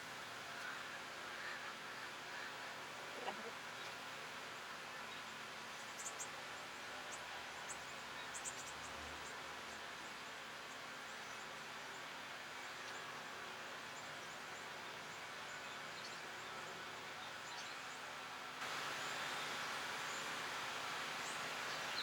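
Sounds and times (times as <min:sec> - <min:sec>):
steady hiss: 0:18.0 - 0:22.0.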